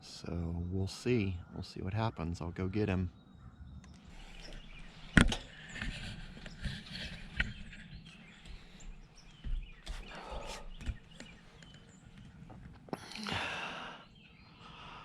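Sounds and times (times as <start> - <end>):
faint outdoor background: 0.0 - 15.0.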